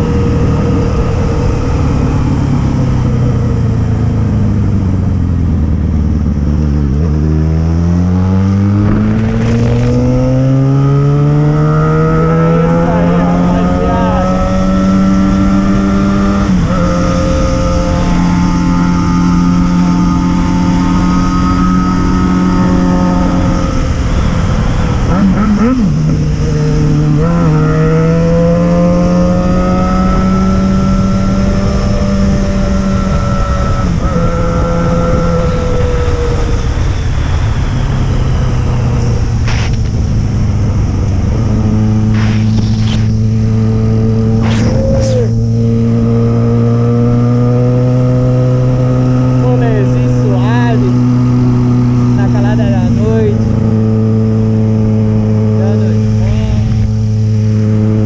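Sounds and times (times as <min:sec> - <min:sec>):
motorcycle engine and exhaust: 0:00.0 - 0:58.0
brief hiss: 0:42.1 - 0:43.2.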